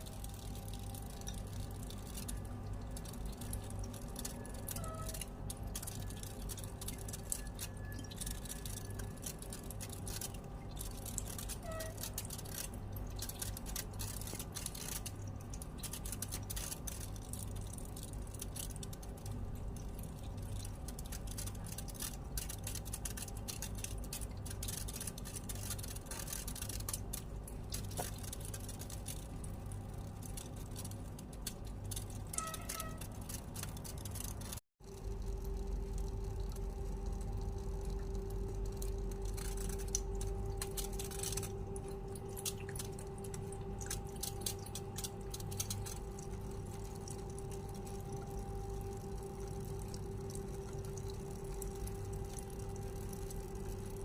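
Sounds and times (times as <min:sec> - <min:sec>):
small electric pump humming: 0:00.0 - 0:54.0
water trickling: 0:00.0 - 0:54.0.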